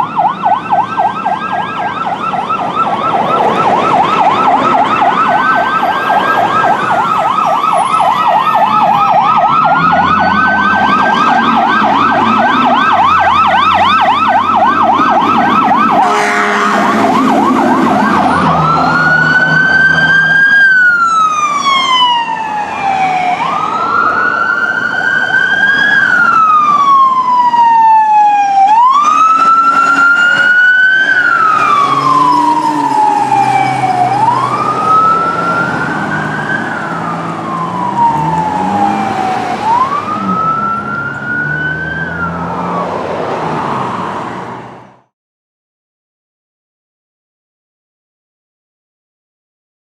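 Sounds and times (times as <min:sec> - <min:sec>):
siren fast yelp: 0:00.0 - 0:43.0
siren slow wail: 0:00.0 - 0:45.1
truck engines rumbling: 0:00.0 - 0:45.1
air horn blast: 0:16.0 - 0:19.3, 0:28.7 - 0:33.1.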